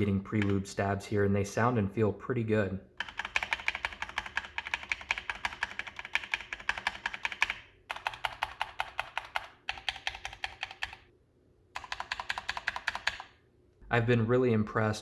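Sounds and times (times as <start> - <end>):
fast typing on mechanical keyboard: 3.0 - 11.1, 11.8 - 13.3.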